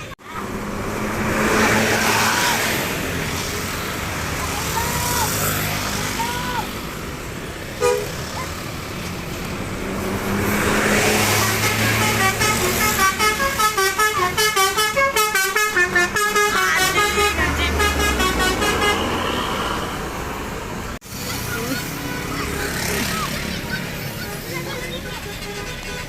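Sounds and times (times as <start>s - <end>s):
bus engine: 0.0s - 26.0s
musical bus horn melody: 7.8s - 8.2s, 11.2s - 19.4s
short horn honk: 7.8s - 8.2s.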